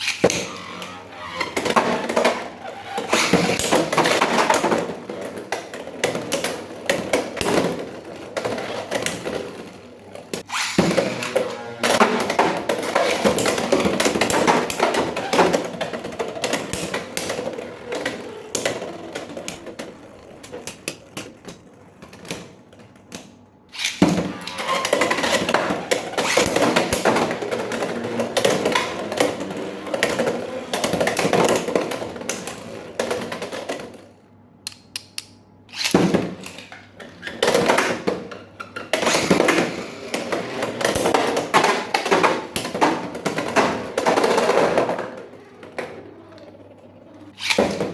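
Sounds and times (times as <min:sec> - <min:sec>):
plastic parts clicking: 0:34.6 - 0:36.8.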